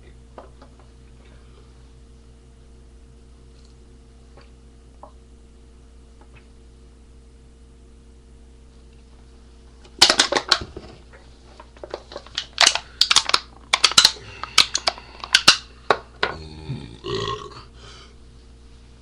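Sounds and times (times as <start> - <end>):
man belching: 16.2 - 17.8.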